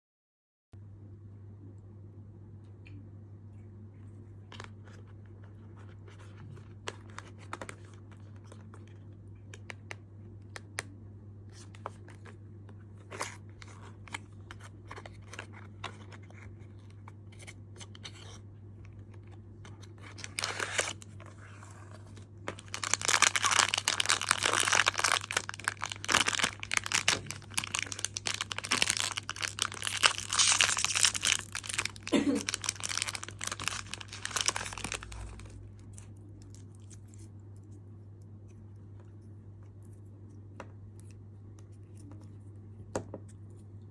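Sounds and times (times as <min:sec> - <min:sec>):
steady low hum: 0:00.8 - 0:43.9
foil wrapper crinkling and tearing: 0:19.9 - 0:21.1, 0:22.5 - 0:37.2.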